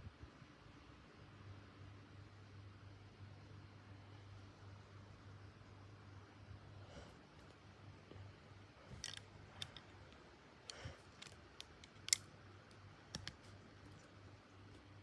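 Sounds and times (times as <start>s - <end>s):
phone handling clicks and taps: 13.2s - 13.4s.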